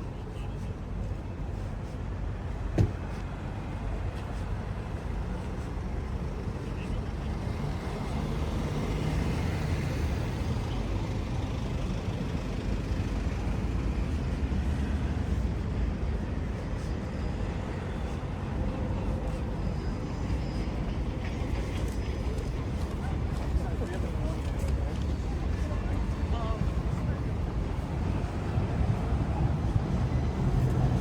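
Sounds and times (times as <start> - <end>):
road traffic rumble: 0.0 - 31.0.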